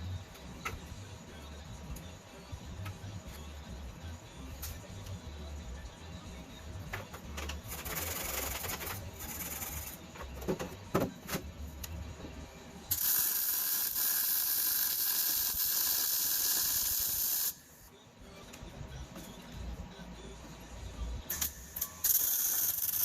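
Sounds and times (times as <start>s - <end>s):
loud steady hiss: 12.9s - 17.9s.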